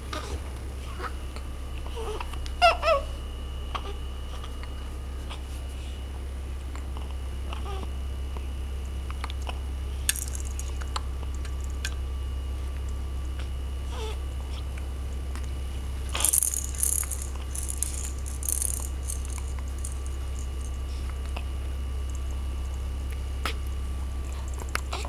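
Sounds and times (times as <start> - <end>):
steady low hum: 10.0 - 13.3, 15.0 - 25.0
baby toy rattling and clicking: 10.1 - 12.0, 16.1 - 20.9, 22.0 - 22.8, 24.3 - 25.0.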